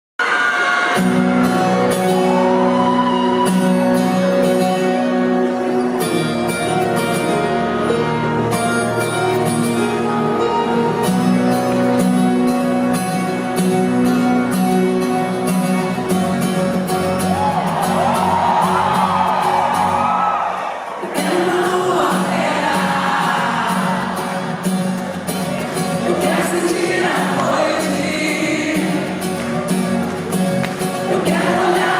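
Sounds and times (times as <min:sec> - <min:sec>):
audience whooping: 0:00.2 - 0:04.4, 0:17.0 - 0:24.7
live band playing: 0:00.2 - 0:20.2, 0:20.9 - 0:31.9
crowd voices: 0:00.2 - 0:31.9.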